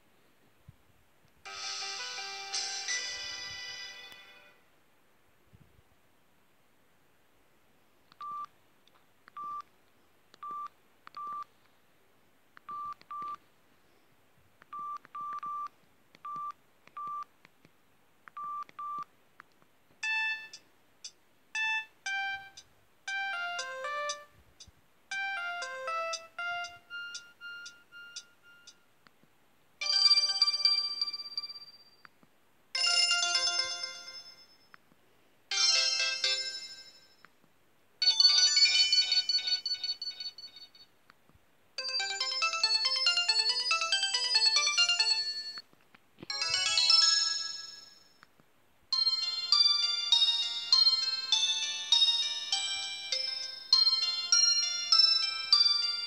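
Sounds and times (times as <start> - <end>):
bright ringtone sounds: 1.5 - 4.6, 20.0 - 20.6, 21.6 - 24.3, 25.1 - 28.8, 29.8 - 32.0, 32.8 - 34.7, 35.5 - 37.2, 38.0 - 40.9, 41.8 - 45.6, 46.3 - 48.2, 49.0 - 56.0
ringtone melody: 1.5 - 4.6, 20.0 - 20.6, 21.6 - 24.3, 25.1 - 28.8, 29.8 - 32.0, 32.8 - 34.6, 35.5 - 37.2, 38.0 - 40.9, 41.8 - 45.6, 46.3 - 48.1, 49.0 - 56.0
phone ringtone beeps: 20.0 - 20.6, 21.6 - 24.3, 25.1 - 28.8, 29.8 - 31.9, 38.0 - 40.9.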